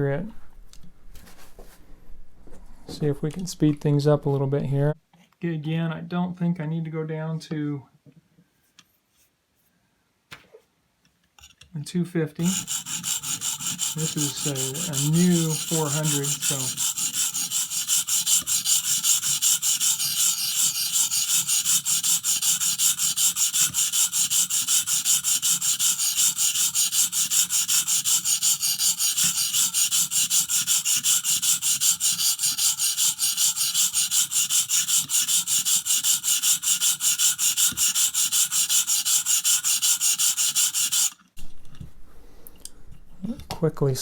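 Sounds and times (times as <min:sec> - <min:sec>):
sharpening stone rasping on knife: 0:12.4 - 0:41.2.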